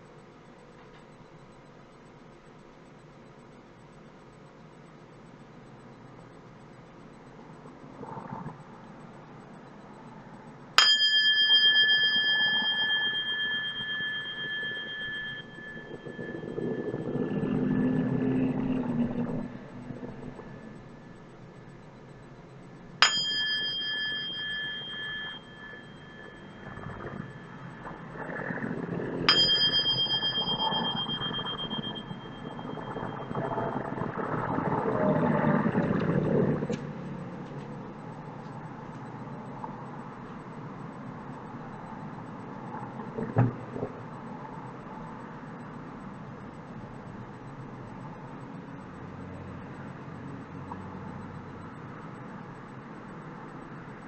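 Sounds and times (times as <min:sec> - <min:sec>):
steady background noise: 0:00.0 - 0:54.0
small bell ringing: 0:10.8 - 0:17.4, 0:23.0 - 0:28.2, 0:29.3 - 0:33.4.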